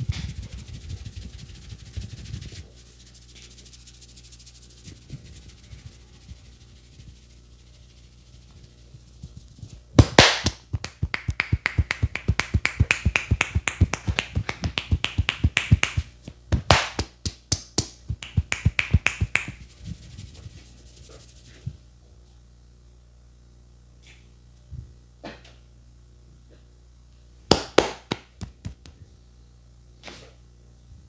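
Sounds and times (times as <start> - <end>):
hands slapping a head: 10.0 - 19.6, 27.5 - 29.0.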